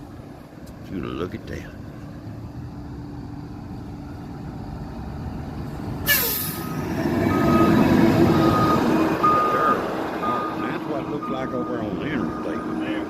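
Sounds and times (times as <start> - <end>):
truck engine: 0.0 - 13.0
air brakes hissing: 6.0 - 6.8
reversing alarm beeping: 6.2 - 13.0.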